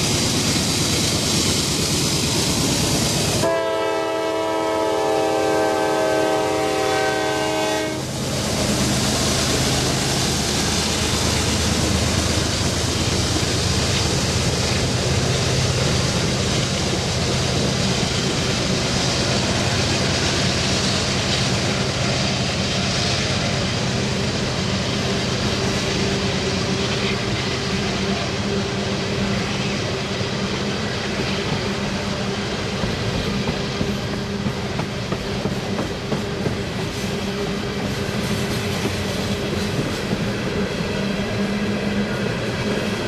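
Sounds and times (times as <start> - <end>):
diesel locomotive drone: 0.0 - 43.0
rail and wheel noise: 0.0 - 43.0
locomotive horn: 3.4 - 8.2.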